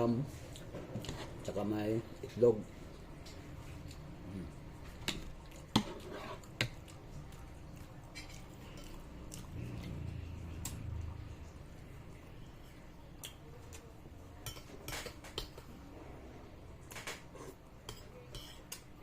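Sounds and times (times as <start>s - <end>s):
soft eating noises: 0.0s - 19.0s.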